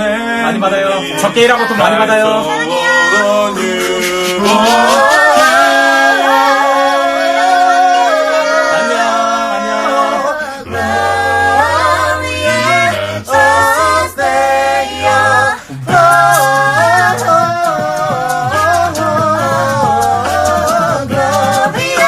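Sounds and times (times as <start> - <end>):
a cappella group singing in harmony: 0.0 - 22.0.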